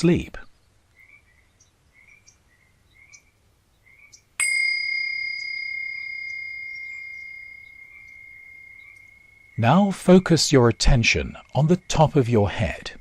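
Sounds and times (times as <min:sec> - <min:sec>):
faint chirping: 0:00.0 - 0:12.2
meditation bell ringing: 0:04.4 - 0:09.6.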